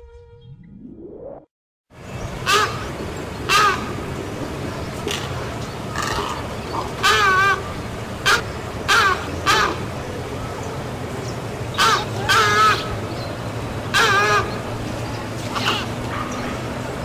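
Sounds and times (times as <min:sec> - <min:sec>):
heron squawking: 0:02.4 - 0:04.0, 0:05.0 - 0:10.0, 0:11.7 - 0:14.8, 0:15.5 - 0:16.6.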